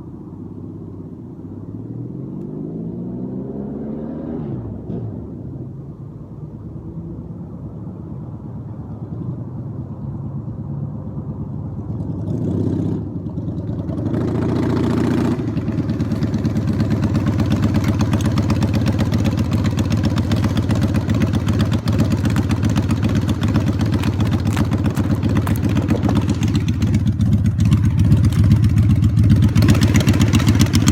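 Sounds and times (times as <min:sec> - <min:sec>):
motorcycle engine revving: 0:11.8 - 0:30.9.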